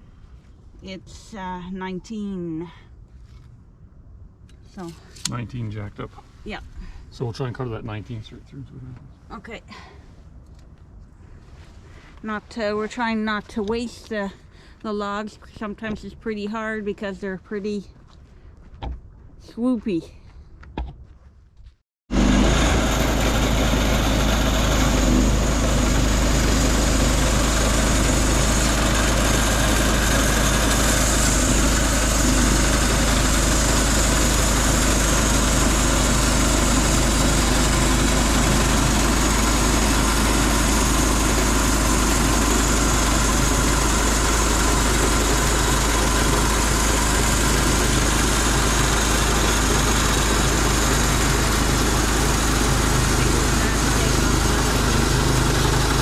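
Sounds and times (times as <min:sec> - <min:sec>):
engine starting and running: 0:22.1 - 0:56.0.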